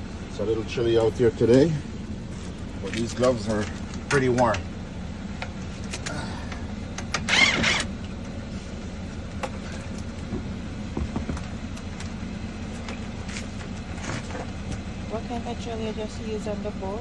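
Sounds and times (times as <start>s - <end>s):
vehicle engine humming: 0.0s - 17.0s
short loud whir: 7.3s - 7.9s
light clicks and knocks: 9.4s - 12.2s.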